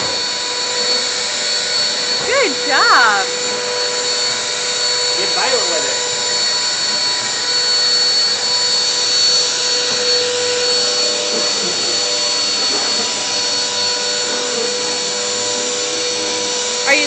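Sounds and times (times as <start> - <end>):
vacuum cleaner high whine: 0.0 - 17.0.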